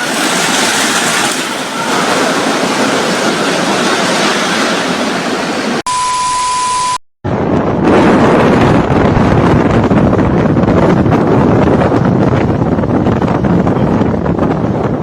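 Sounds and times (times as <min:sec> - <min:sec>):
steady rushing noise: 0:00.0 - 0:05.8
single-pitched beep: 0:05.9 - 0:07.0.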